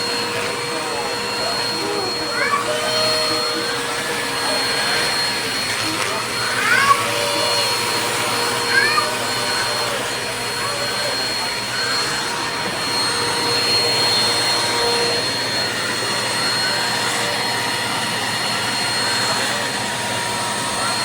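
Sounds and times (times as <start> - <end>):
vacuum cleaner running: 0.0 - 21.0.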